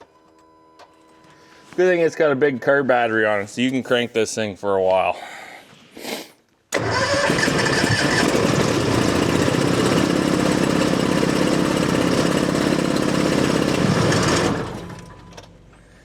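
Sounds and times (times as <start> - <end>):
engine starter cranking: 6.7 - 15.8.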